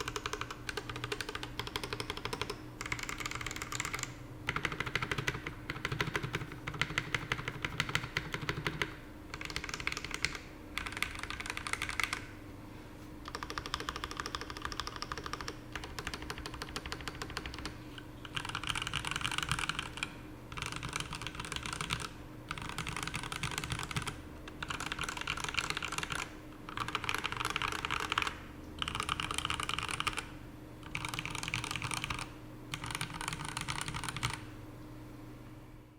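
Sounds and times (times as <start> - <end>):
fast typing on mechanical keyboard: 0.0 - 12.3, 13.2 - 34.5.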